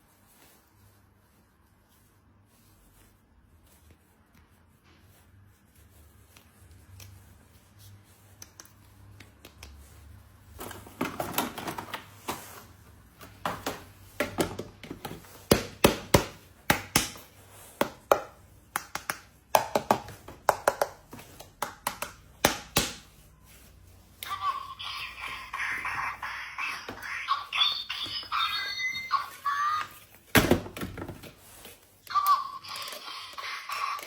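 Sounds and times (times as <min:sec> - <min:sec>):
sharp clicks and taps: 0:17.8 - 0:23.0.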